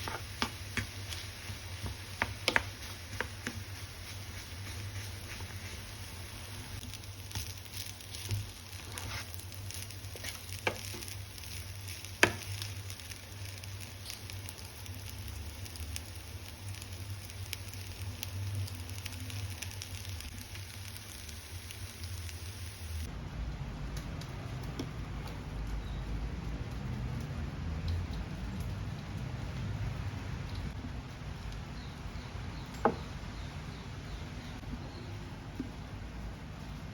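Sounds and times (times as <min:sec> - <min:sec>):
food sizzling in a pan: 0:00.0 - 0:23.1.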